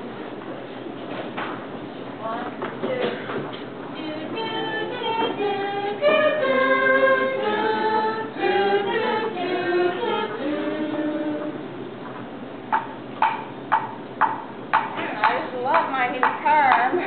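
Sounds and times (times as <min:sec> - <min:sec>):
a cappella group singing: 0:03.9 - 0:11.9.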